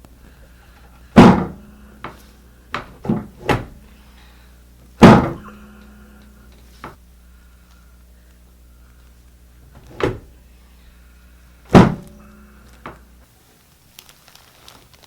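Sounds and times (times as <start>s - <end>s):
heavy thuds on treatment table: 1.2s - 2.2s, 5.0s - 5.5s, 11.7s - 12.1s.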